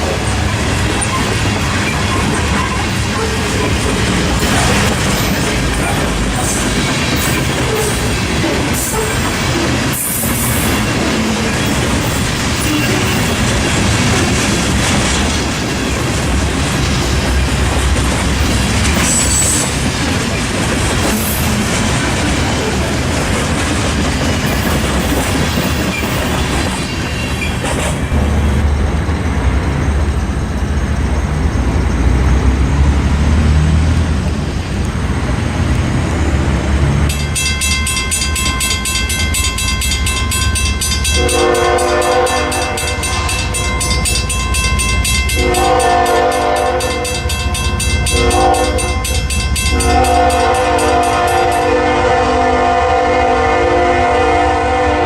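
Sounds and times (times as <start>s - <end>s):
train rumbling on rails: 0.0s - 55.0s
locomotive air horn: 12.6s - 13.3s, 41.2s - 43.0s, 45.4s - 47.2s, 48.1s - 49.0s, 49.7s - 55.0s.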